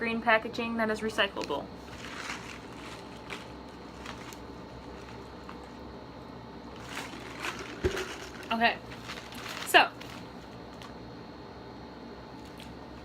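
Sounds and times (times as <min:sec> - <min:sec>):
low room hum: 0:00.0 - 0:13.0
packaging clicks and crinkles: 0:01.9 - 0:05.8, 0:06.7 - 0:11.0.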